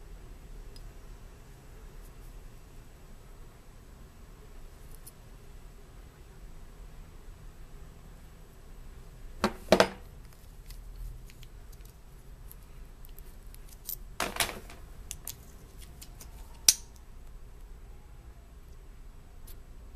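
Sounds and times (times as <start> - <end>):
small hard objects clicking: 10.3 - 17.1.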